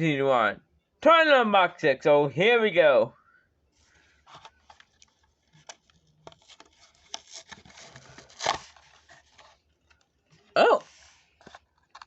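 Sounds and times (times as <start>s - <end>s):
packaging rustling and clicking: 4.2s - 10.4s, 11.3s - 12.0s
packaging ripping: 5.6s - 9.5s.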